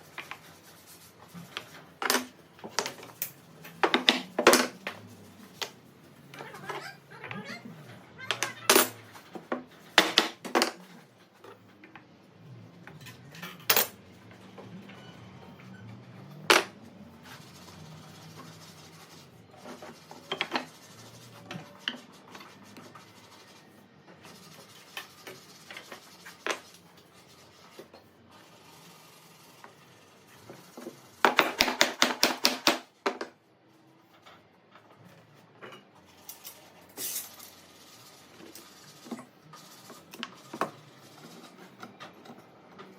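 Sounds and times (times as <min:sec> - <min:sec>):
clinks of small parts and tools: 0:08.3 - 0:09.2, 0:12.9 - 0:14.0, 0:35.6 - 0:37.6.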